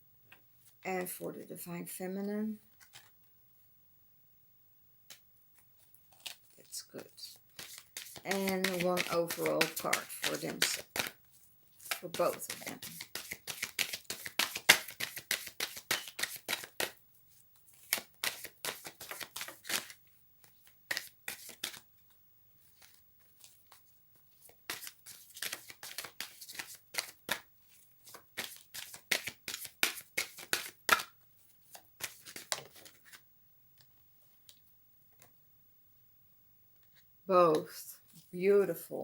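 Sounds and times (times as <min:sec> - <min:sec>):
cards being shuffled: 0:02.7 - 0:03.1, 0:05.8 - 0:33.2.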